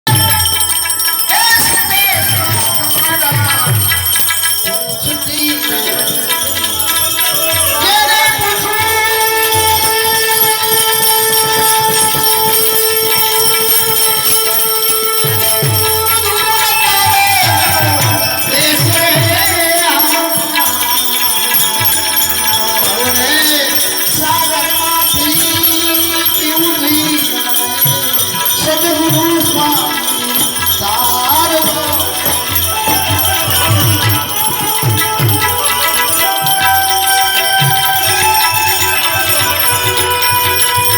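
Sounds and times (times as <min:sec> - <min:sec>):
jingling bell percussion: 0:00.0 - 0:40.9
tabla strokes: 0:00.1 - 0:40.9.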